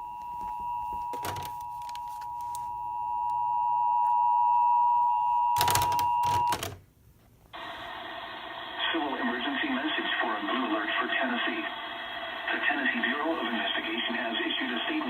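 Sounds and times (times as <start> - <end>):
noise bursts: 7.4 - 15.0.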